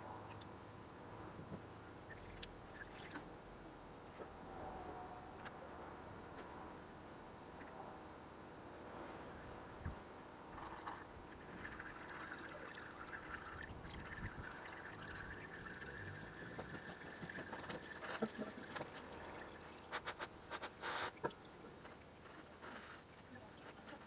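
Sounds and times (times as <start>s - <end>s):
oil pouring and trickling: 10.5s - 23.8s.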